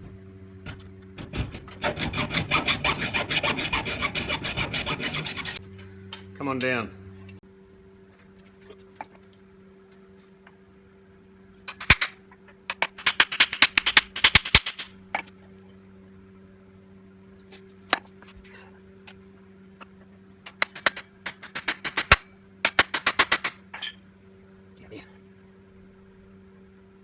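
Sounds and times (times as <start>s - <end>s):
hacksaw cutting metal: 1.2s - 5.6s.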